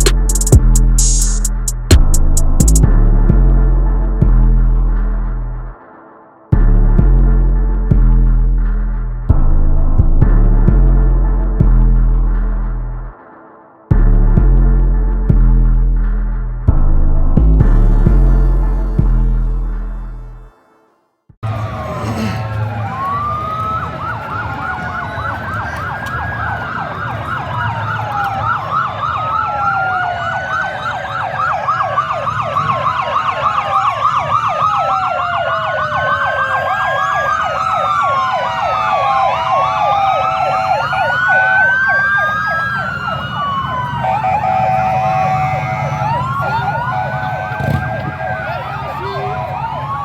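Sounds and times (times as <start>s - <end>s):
low rumble of vehicles: 0.0s - 5.8s, 6.5s - 13.2s, 13.9s - 20.5s, 21.4s - 50.0s
emergency sirens wailing: 0.0s - 13.5s, 17.0s - 20.5s, 21.4s - 50.0s
sirens yelping: 21.4s - 50.0s.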